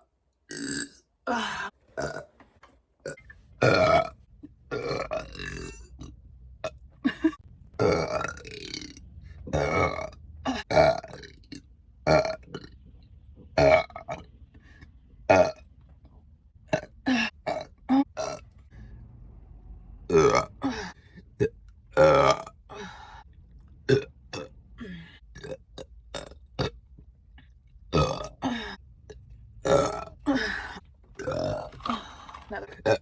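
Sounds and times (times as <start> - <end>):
person burping: 0.5 - 2.3, 3.0 - 11.4, 12.1 - 12.7, 16.7 - 18.4, 20.1 - 23.2, 23.9 - 26.8, 27.9 - 28.8, 29.6 - 33.0.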